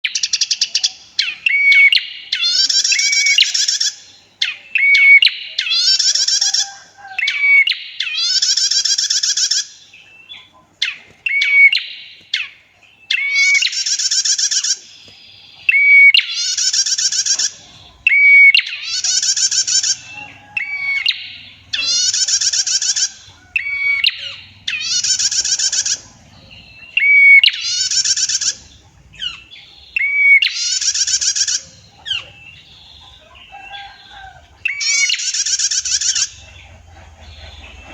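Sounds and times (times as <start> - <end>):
bird whistled note and rattling trill: 15.6 - 37.9.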